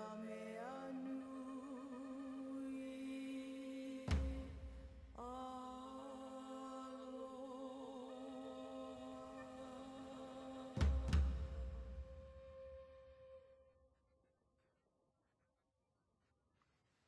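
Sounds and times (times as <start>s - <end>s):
person humming held notes: 0.0s - 4.5s.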